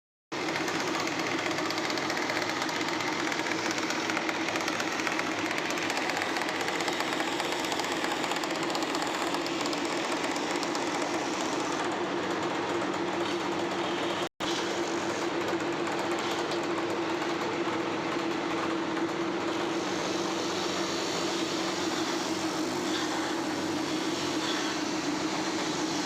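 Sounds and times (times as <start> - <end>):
power tool motor running: 1.0 - 11.9.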